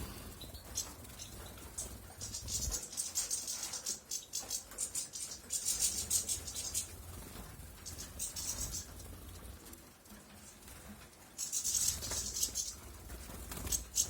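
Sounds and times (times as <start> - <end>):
goldfinch twittering song: 0.0 - 9.1, 11.3 - 14.0.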